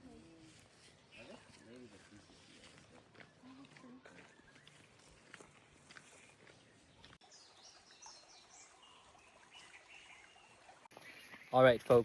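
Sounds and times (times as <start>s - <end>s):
faint bird chirps: 0.0s - 5.2s.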